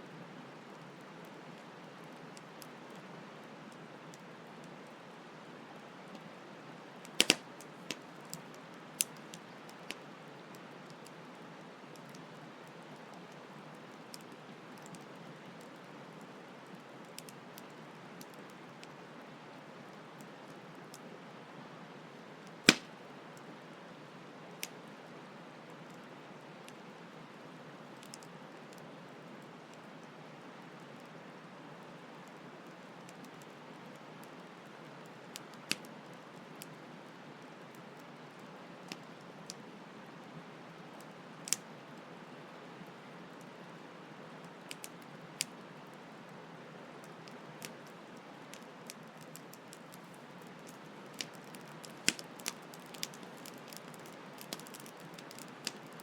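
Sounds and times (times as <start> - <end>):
campfire crackling and popping: 7.0 - 19.0, 22.4 - 23.6, 27.9 - 28.8, 32.6 - 39.6, 40.8 - 42.6, 43.3 - 46.2, 46.9 - 56.0.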